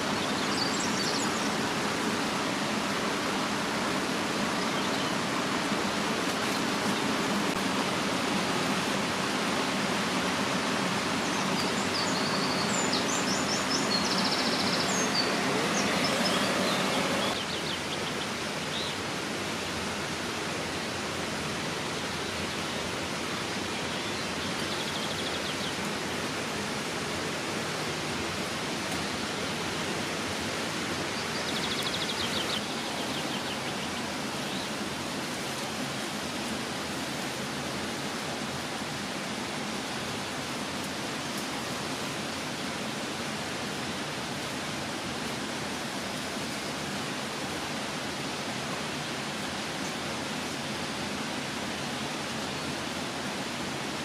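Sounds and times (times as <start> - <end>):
outdoor rushing noise: 13.6 - 17.4.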